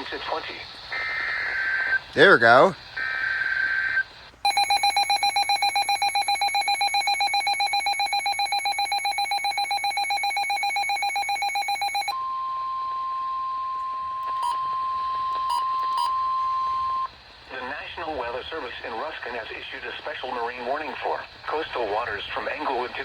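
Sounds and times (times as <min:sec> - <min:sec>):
steady warning alarm tone: 0:01.0 - 0:17.1
fast pulsing electronic beep: 0:04.5 - 0:12.2
short beeps: 0:04.5 - 0:12.2.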